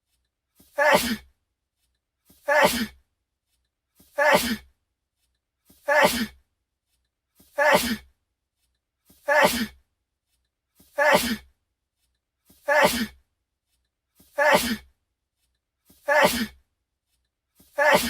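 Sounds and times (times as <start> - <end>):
man sneezing: 0.8 - 1.2, 2.5 - 3.0, 4.2 - 4.6, 5.9 - 6.4, 7.6 - 8.0, 9.3 - 9.8, 11.0 - 11.4, 12.7 - 13.2, 14.4 - 14.8, 16.1 - 16.6, 17.8 - 18.0.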